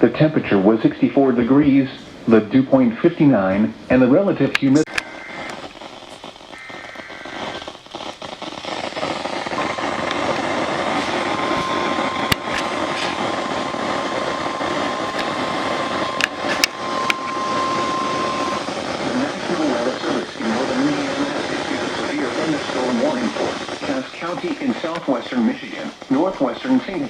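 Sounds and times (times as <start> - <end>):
static hiss with crackles: 0.0 - 27.0
short data tones: 4.8 - 24.4
steady warning alert tone: 13.0 - 19.6.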